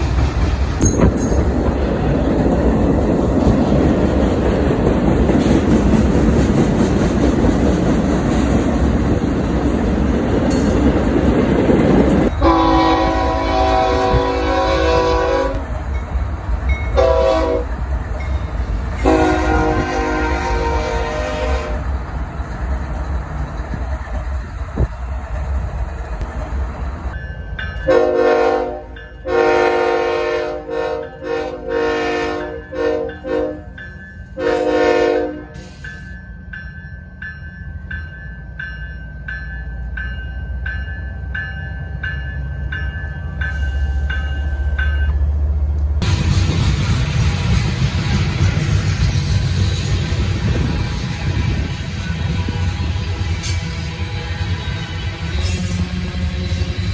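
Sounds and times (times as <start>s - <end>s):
locomotive air horn blasts: 12.4s - 15.6s, 17.0s - 17.8s, 19.0s - 21.8s, 27.9s - 33.8s, 34.4s - 35.8s, 50.5s - 56.9s.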